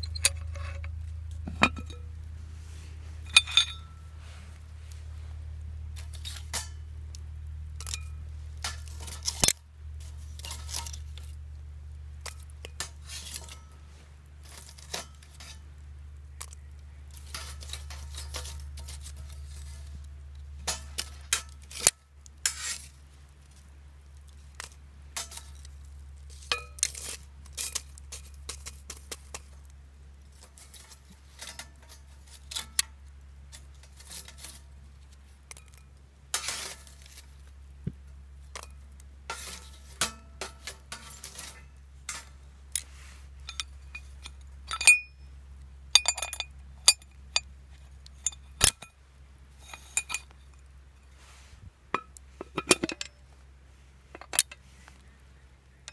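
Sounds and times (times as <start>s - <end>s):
steady low hum: 0.0s - 55.9s
metal gear clinking: 3.3s - 3.9s, 49.6s - 50.3s.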